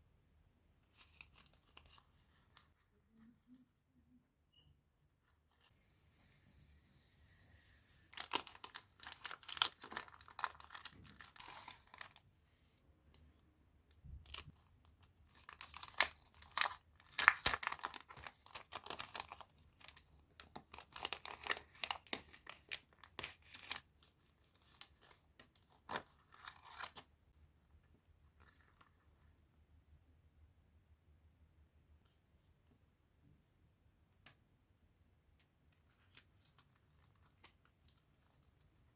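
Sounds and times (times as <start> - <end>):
packaging crinkling and tearing: 8.0 - 12.3, 14.2 - 27.1.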